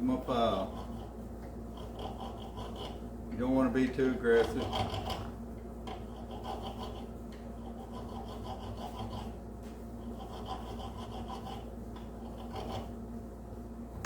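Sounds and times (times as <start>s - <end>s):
file scraping bolt threads: 1.7s - 3.0s, 3.8s - 5.3s, 5.9s - 7.1s, 7.7s - 9.3s, 10.1s - 12.9s.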